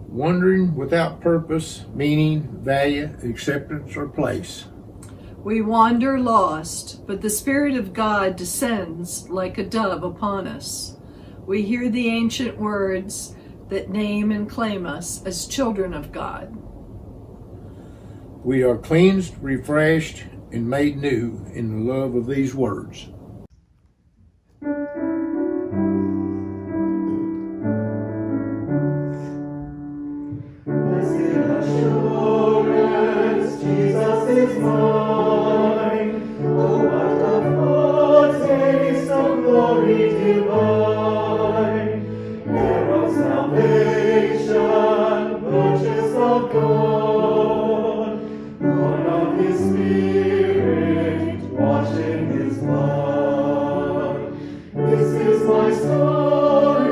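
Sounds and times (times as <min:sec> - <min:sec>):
keyboard playing held chords: 0:24.6 - 0:47.4
choir singing a hymn: 0:30.6 - 0:56.9.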